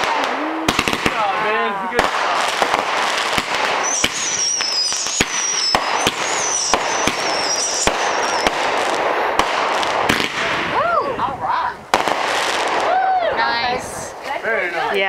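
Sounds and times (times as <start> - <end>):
fireworks bangs: 0.0 - 14.2
fireworks crackling hiss: 0.0 - 15.0
wavering high whistle: 3.8 - 8.5.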